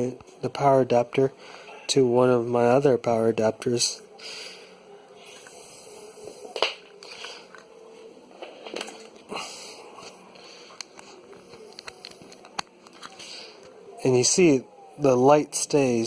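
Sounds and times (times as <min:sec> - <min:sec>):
rustling of cables: 0:06.2 - 0:09.4, 0:10.0 - 0:13.8.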